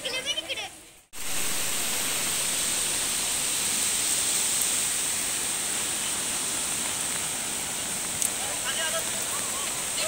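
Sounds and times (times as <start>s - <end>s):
rushing water hiss: 0.0s - 10.0s.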